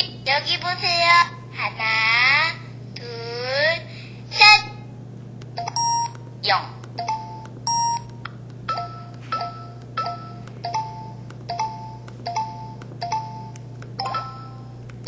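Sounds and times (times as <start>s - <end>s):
low hum: 2.6s - 15.0s.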